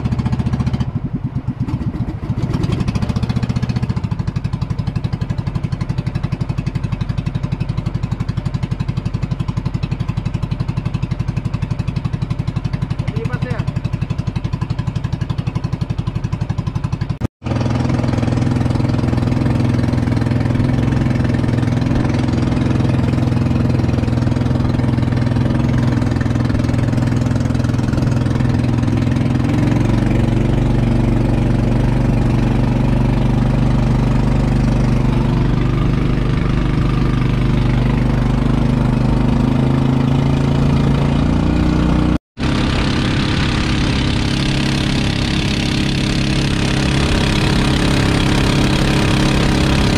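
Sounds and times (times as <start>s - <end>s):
small engine running: 17.4s - 49.9s.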